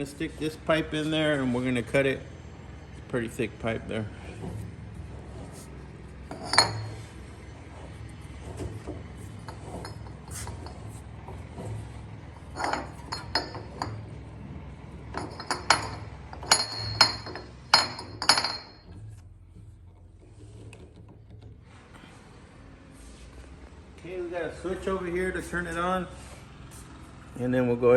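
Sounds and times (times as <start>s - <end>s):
steel pipe clanking against metal vise: 6.3s - 7.2s, 8.4s - 14.3s, 14.9s - 19.0s.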